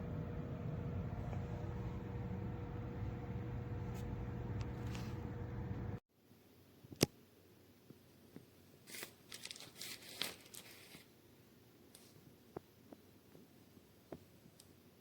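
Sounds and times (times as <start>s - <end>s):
steady hum: 0.0s - 6.0s
crinkling rustling handling noise: 8.7s - 11.1s.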